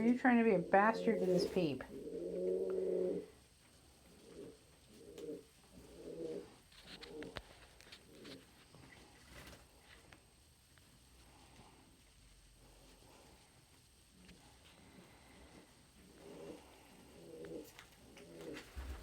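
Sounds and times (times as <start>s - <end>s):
pigeons cooing: 0.0s - 3.4s, 4.0s - 7.4s, 16.0s - 19.0s.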